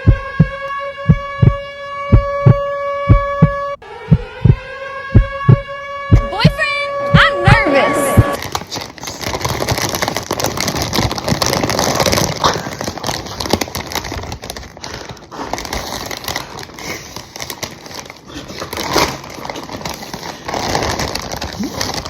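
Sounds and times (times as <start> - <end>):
plastic snack bag crinkling: 8.4 - 22.0.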